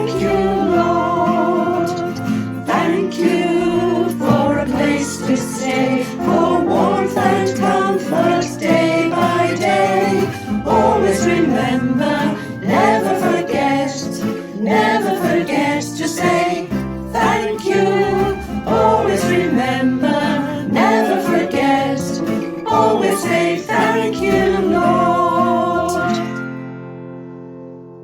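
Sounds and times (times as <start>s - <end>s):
worship song with singing: 0.0s - 26.6s.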